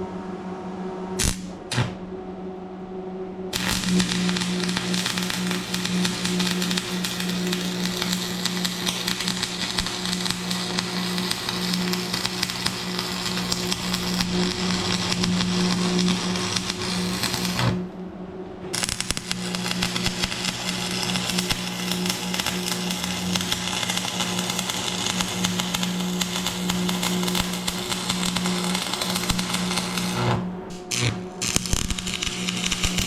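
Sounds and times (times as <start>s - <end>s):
electrical hum: 0.0s - 33.0s
welding arc crackling: 1.2s - 2.0s, 3.5s - 17.9s, 18.7s - 33.0s.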